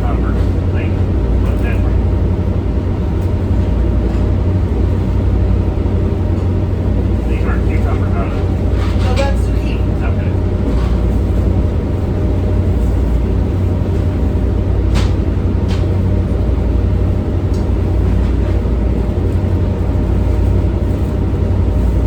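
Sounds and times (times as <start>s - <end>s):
boat diesel engine drone: 0.0s - 22.0s.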